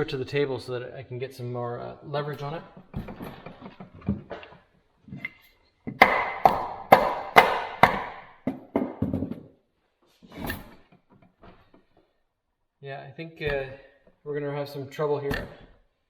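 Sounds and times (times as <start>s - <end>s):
hammer striking steel vise: 5.2s - 9.4s, 13.4s - 13.8s, 15.3s - 15.7s.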